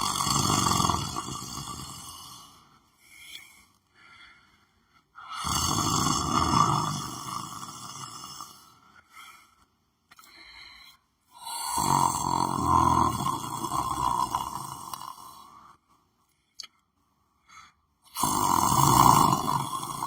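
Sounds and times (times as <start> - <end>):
person snoring: 0.0 - 9.6, 10.2 - 15.8, 18.0 - 20.0
faint breaths: 2.1 - 5.5, 8.4 - 11.6.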